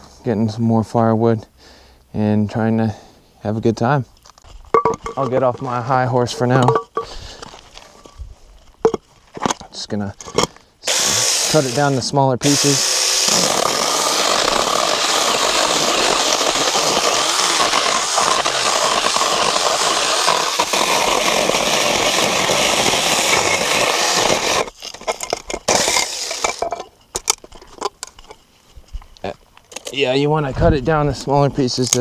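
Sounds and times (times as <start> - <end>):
short loud bursts: 10.8 - 24.7
battery saw cutting firewood: 10.8 - 26.6.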